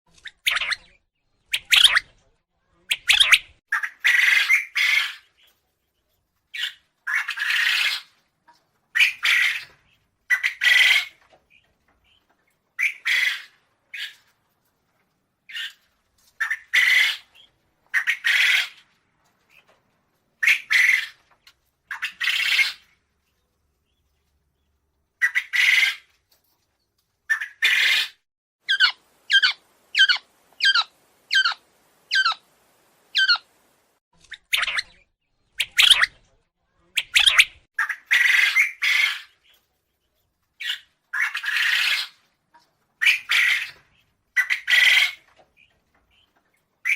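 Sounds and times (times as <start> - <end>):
quail calling: 1.5 - 2.1, 27.3 - 32.5, 33.1 - 33.5, 35.6 - 36.2, 44.4 - 45.3.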